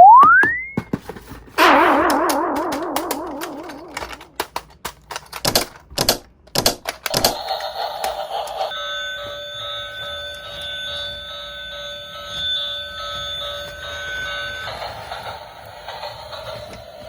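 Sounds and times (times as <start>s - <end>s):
steady electronic tones: 0.0s - 0.8s, 1.6s - 4.4s
warbling wobbling tone: 0.0s - 0.8s, 1.6s - 4.4s.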